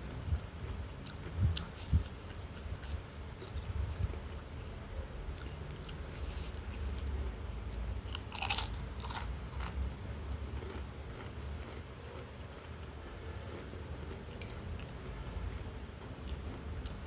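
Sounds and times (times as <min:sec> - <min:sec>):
person chewing: 0:05.4 - 0:17.0
crunching food: 0:07.6 - 0:17.0.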